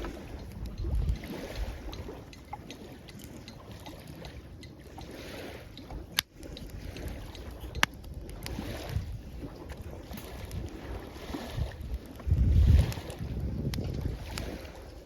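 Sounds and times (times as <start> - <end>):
waves washing at shoreline: 0.0 - 15.0
wind rumble on microphone: 0.0 - 15.0
campfire crackling: 5.8 - 14.9.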